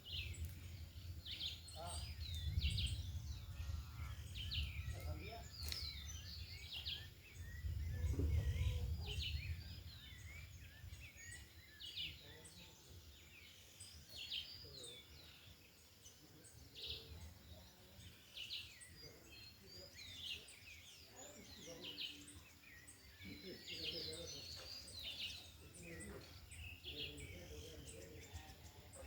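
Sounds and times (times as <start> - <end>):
wind buffeting microphone: 0.0 - 12.5
wild birds chirping: 0.0 - 29.0.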